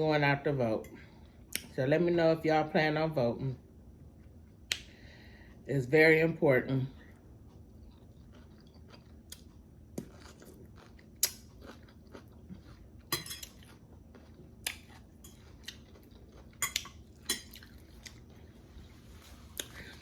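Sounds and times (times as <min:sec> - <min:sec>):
person chewing crispy food: 0:07.1 - 0:20.0.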